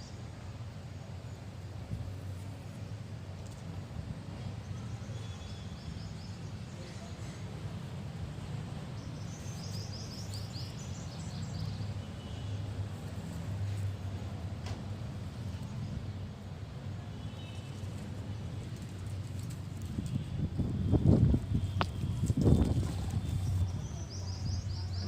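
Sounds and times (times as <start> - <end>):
small birds chirping: 9.0 - 12.6.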